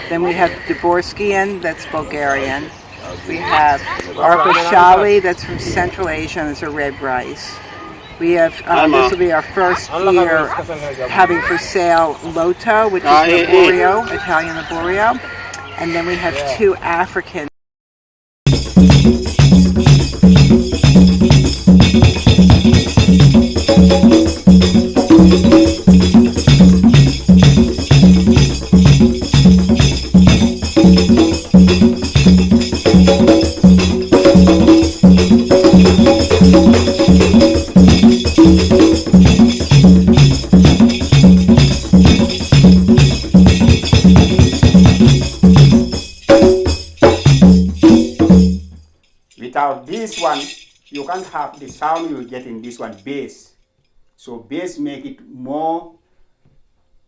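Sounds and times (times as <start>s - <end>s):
rattling jingle: 18.5s - 54.1s.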